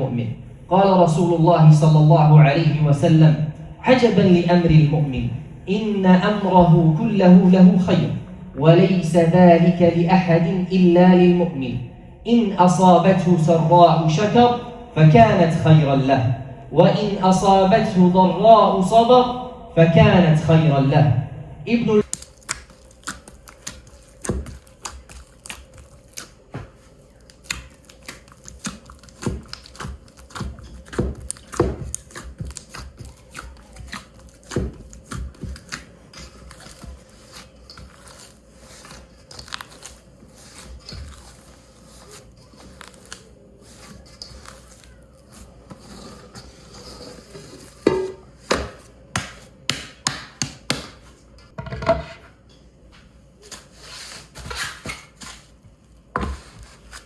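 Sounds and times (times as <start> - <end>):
packaging rustling: 22.1 - 47.8
utensils and dishes knocking: 47.8 - 50.6.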